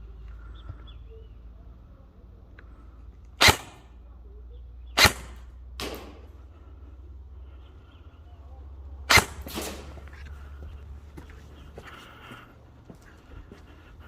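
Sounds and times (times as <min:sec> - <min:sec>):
airsoft gun shots: 0:03.4 - 0:04.0, 0:05.0 - 0:06.3, 0:09.1 - 0:10.0.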